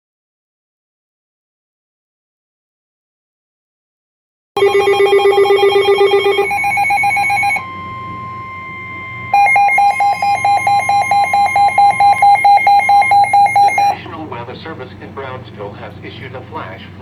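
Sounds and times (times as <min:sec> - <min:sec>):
fast on-off beeping tone: 0:04.6 - 0:14.0
steady single alert tone: 0:04.6 - 0:14.0
warbling electronic alert tone: 0:04.6 - 0:14.0.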